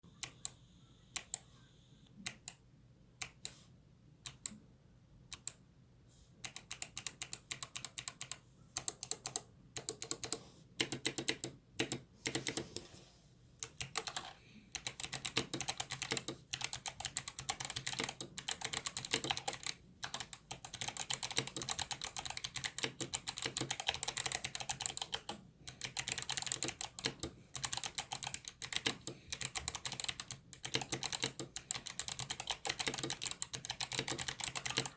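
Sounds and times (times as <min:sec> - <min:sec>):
mechanical keyboard typing: 0:06.4 - 0:12.8, 0:13.6 - 0:34.9.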